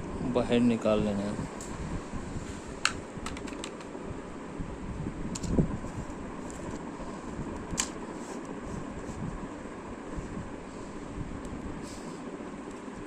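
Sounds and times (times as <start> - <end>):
steady low hum: 0.0 - 13.0
small plastic clicks: 2.8 - 3.9.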